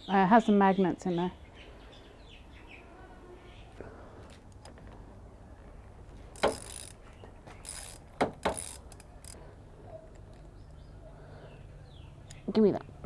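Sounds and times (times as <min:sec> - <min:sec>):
ratchet strokes: 0:06.4 - 0:07.0, 0:07.6 - 0:09.4
sharp ratchet click: 0:06.4 - 0:07.0, 0:07.6 - 0:09.4.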